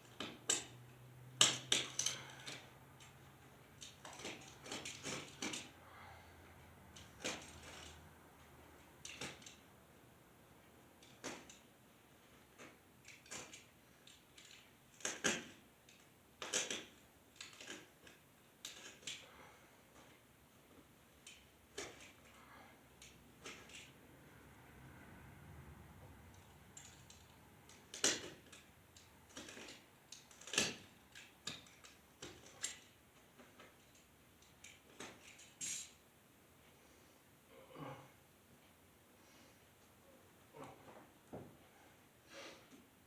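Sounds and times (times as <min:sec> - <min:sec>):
metallic clicks and clinks: 0:01.4 - 0:03.2, 0:26.3 - 0:33.0.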